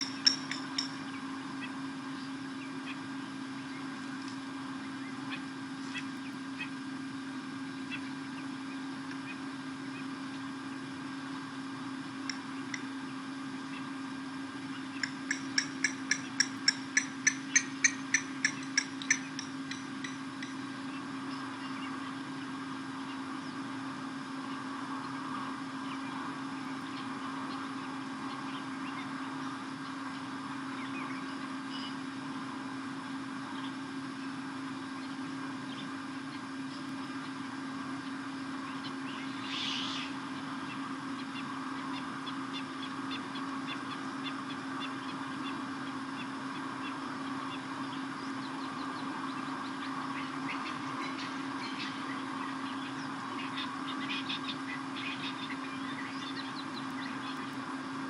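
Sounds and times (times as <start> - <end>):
low electrical hum: 0.0 - 58.0
short bird calls: 38.7 - 57.6.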